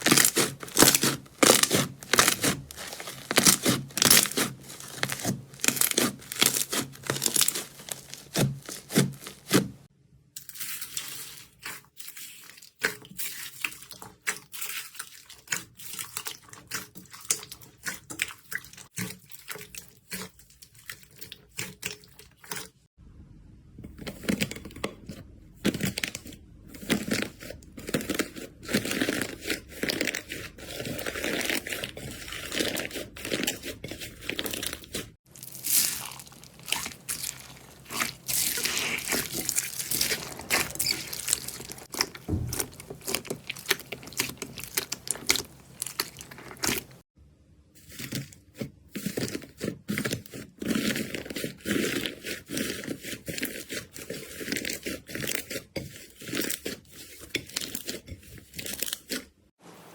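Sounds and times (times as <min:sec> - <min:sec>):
slime crackling and squishing: 0:00.0 - 0:09.9, 0:25.6 - 0:47.1, 0:49.0 - 0:59.4.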